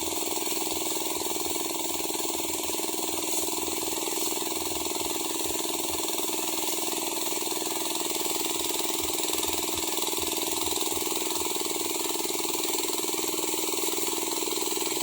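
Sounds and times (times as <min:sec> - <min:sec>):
sprayer engine running steadily: 0:00.0 - 0:15.0.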